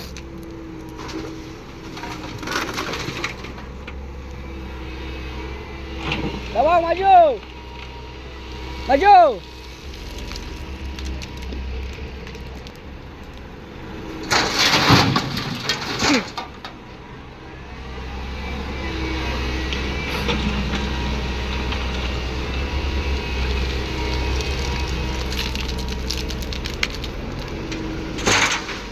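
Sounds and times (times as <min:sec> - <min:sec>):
excavator diesel engine running: 0:00.0 - 0:28.9
loud rough clattering: 0:14.2 - 0:16.8, 0:24.3 - 0:28.9.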